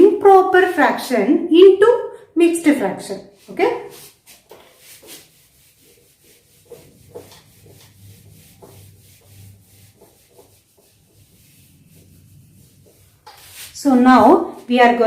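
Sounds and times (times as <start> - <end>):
writing on a board: 3.9 - 13.8.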